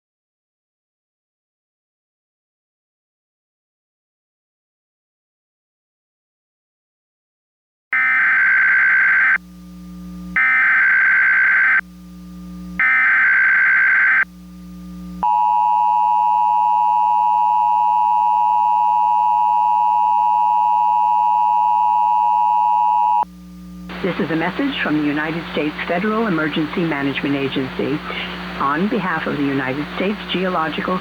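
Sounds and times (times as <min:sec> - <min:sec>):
data burst tones: 0:08.0 - 0:09.4, 0:10.4 - 0:11.8, 0:12.8 - 0:14.3
two-tone attention signal: 0:15.2 - 0:23.2.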